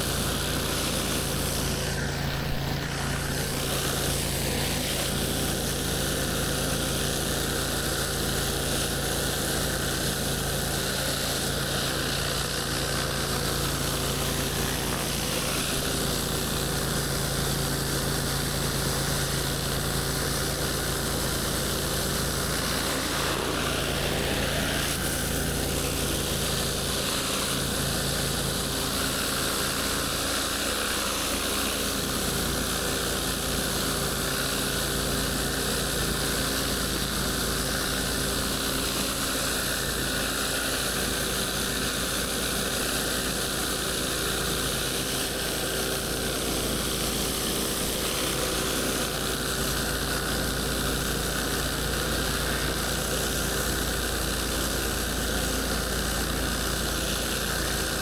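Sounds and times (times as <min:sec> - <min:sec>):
pressure washer engine running: 0:00.0 - 0:58.0
water spraying hiss: 0:02.2 - 0:04.1, 0:21.4 - 0:26.6.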